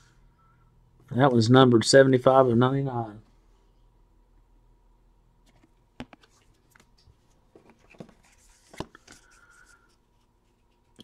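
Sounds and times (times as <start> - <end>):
cards clicking and rustling: 5.5 - 9.8.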